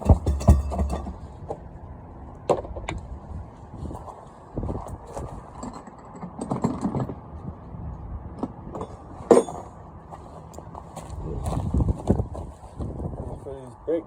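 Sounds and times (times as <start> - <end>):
metal tools clinking: 0.0 - 1.2
low rumbling: 0.0 - 1.4.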